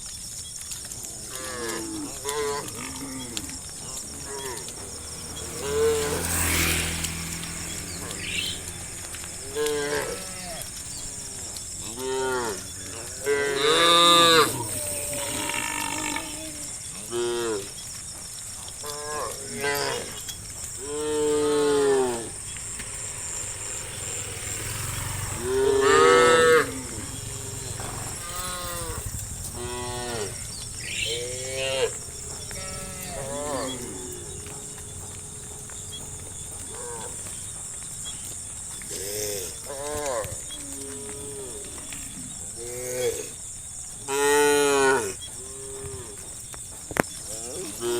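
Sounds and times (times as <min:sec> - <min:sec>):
cattle mooing: 0:01.1 - 0:17.8, 0:18.8 - 0:38.2, 0:44.1 - 0:46.2.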